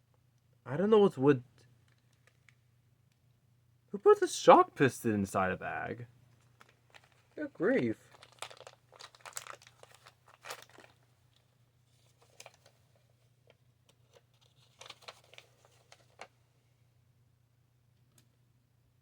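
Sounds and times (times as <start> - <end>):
plastic bag crinkling: 6.3 - 11.4, 12.0 - 13.1, 13.9 - 16.3.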